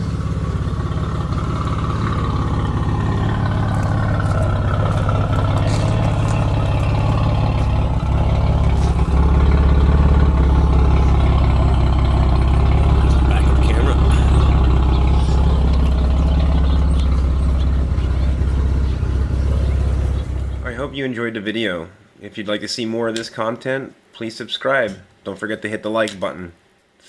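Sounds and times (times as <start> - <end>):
car engine idling: 0.0 - 21.0.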